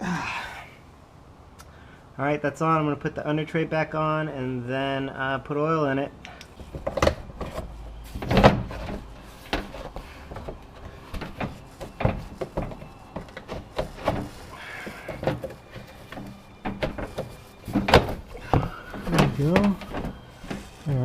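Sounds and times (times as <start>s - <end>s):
car underbody tray knocks and rattles: 6.6s - 20.9s.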